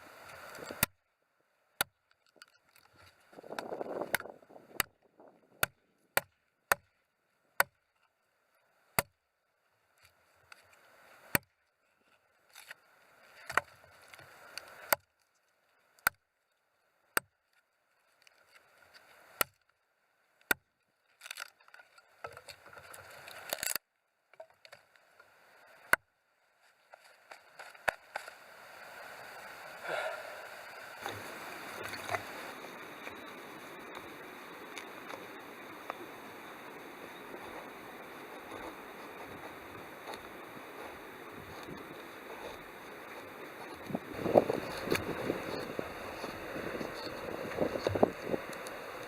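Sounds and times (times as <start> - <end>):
axe striking wood: 5.6 - 6.9
wood rustling and scraping: 21.0 - 23.8, 26.6 - 28.5.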